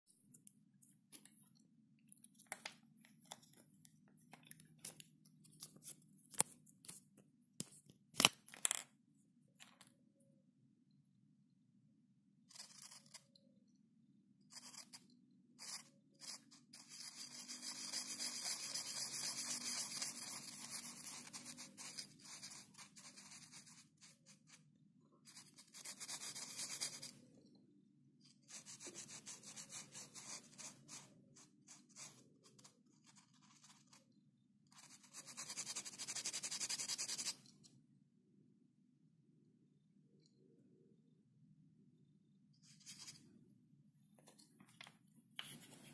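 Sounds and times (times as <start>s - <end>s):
scratchy rubbing strokes: 15.6s - 24.6s.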